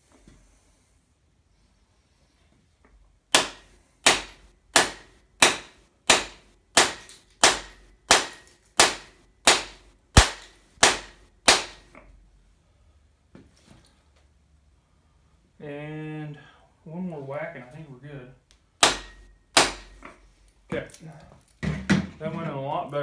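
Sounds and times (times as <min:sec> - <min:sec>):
rubber mallet striking metal tool: 0:03.4 - 0:11.9, 0:18.8 - 0:20.1.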